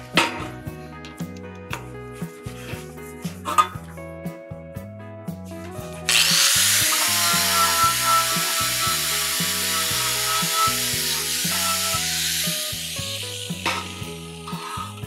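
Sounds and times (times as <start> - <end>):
background music with bass line: 0.0 - 15.0
workshop machine rushing noise: 6.1 - 15.0.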